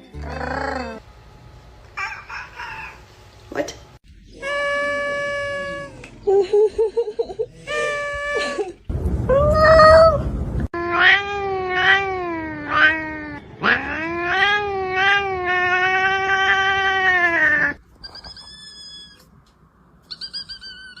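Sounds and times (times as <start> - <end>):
cat yowling: 4.4 - 6.0, 10.8 - 19.2
higher-pitched cries: 4.4 - 6.0, 20.1 - 21.0.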